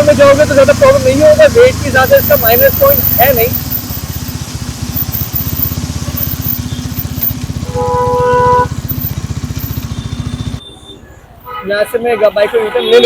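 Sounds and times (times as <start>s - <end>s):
motorcycle engine running: 0.0s - 10.6s
horn: 7.6s - 8.8s.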